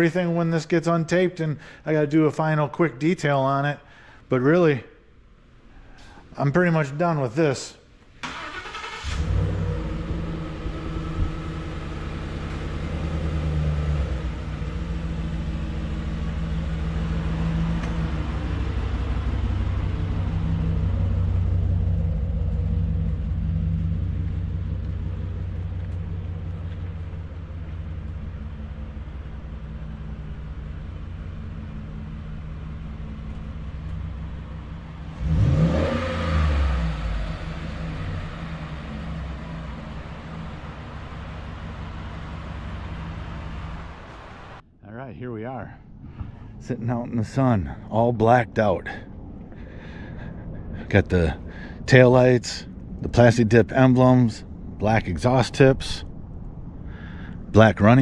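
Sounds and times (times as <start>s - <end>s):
engine revving: 8.2s - 44.6s
pickup engine rumbling: 8.2s - 44.7s, 45.8s - 58.0s.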